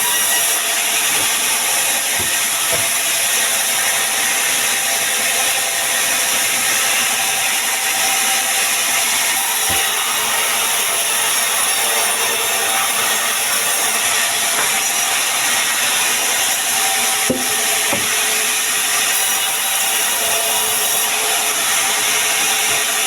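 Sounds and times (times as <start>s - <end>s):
saw cutting through wood: 0.0s - 23.0s
short knocks: 2.1s - 3.0s.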